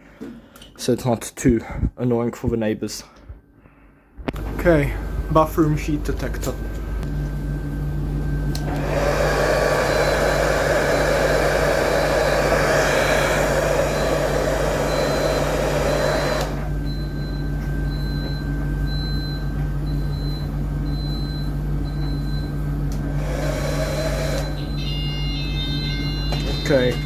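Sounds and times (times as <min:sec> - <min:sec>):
hot-air blower running: 0:04.2 - 0:27.0
high electronic beep: 0:24.5 - 0:27.0.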